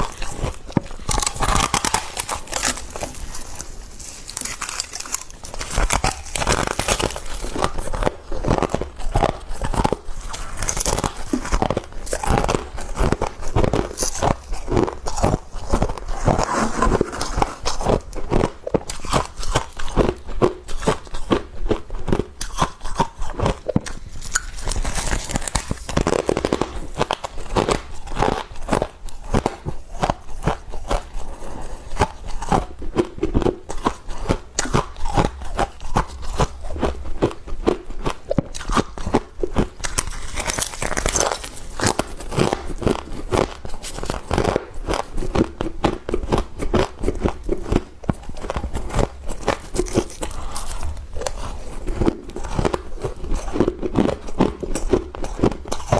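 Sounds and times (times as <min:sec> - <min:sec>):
frost crunching while chewed: 0:00.0 - 0:55.9.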